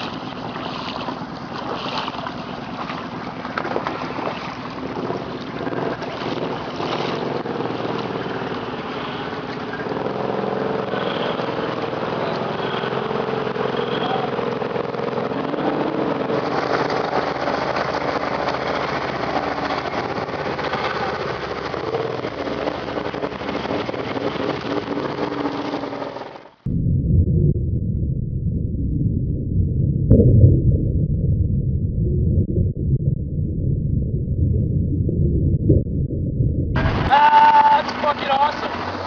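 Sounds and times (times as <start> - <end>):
atv engines running: 0.0 - 26.5, 36.8 - 39.0.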